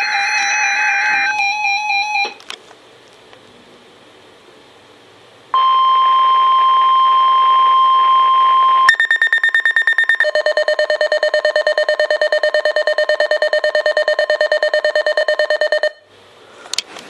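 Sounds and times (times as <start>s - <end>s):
lower-pitched beeping alarm: 0.0s - 2.4s, 5.6s - 16.0s
steady warning alarm tone: 0.0s - 2.4s, 5.6s - 16.1s
rapid pulsing alarm beep: 5.6s - 16.0s.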